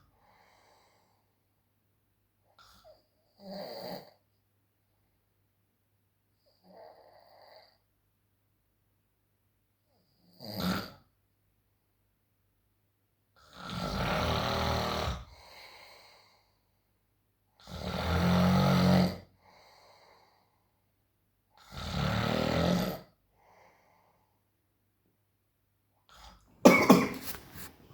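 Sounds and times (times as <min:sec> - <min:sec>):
person snoring: 0:13.5 - 0:15.4, 0:21.6 - 0:23.1.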